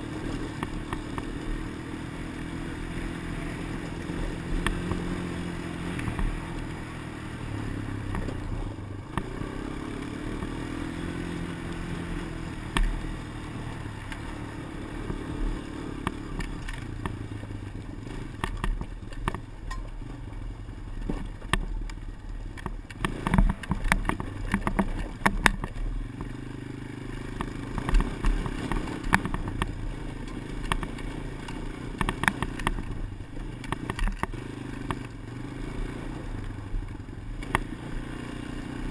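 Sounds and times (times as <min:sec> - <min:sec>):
sharp recording clicks: 0:12.7 - 0:13.0, 0:18.3 - 0:20.0, 0:21.0 - 0:26.4, 0:27.4 - 0:33.0, 0:33.6 - 0:35.2, 0:37.4 - 0:37.7.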